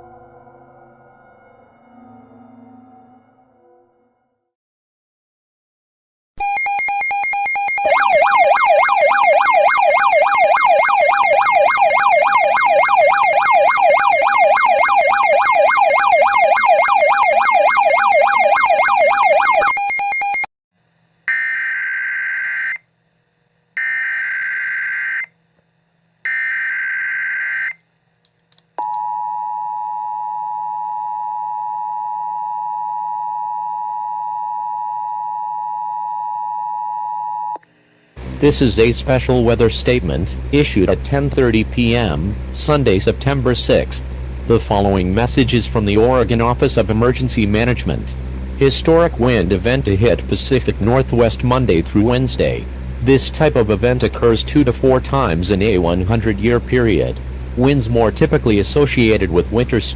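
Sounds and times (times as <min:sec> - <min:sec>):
warbling siren-like alert tone: 0:00.0 - 0:04.2, 0:06.4 - 0:20.5.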